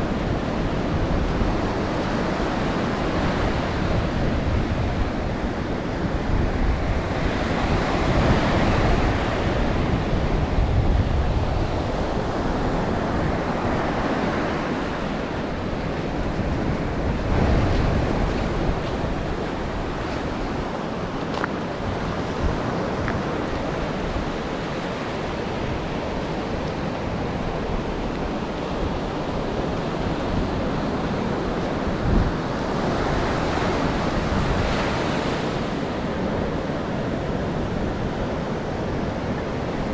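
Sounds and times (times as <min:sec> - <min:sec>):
ocean waves breaking: 0:00.0 - 0:39.9
wind rumbling on microphone: 0:00.0 - 0:39.9.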